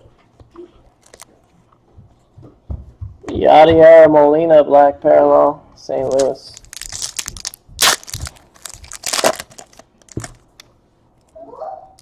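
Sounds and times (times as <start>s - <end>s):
wrapper crinkling and tearing: 6.0s - 10.4s
cards shuffling: 6.0s - 10.5s.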